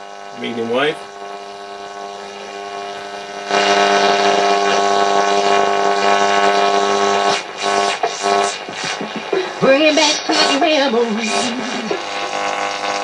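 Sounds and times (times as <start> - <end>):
radio buzz over hiss: 0.0 - 13.0
radio station breaking through: 7.7 - 12.4.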